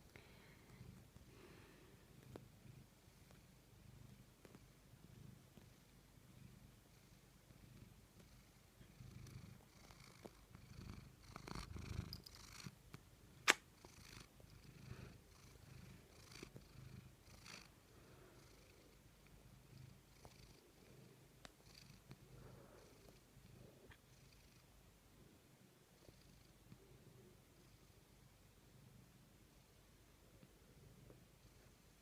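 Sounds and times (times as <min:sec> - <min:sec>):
cat purring: 0:00.0 - 0:32.0
sharp click: 0:13.4 - 0:13.6.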